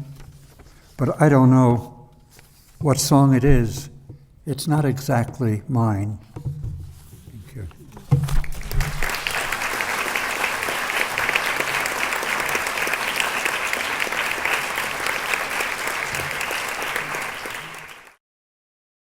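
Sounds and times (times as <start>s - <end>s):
audience applauding: 8.4s - 18.2s.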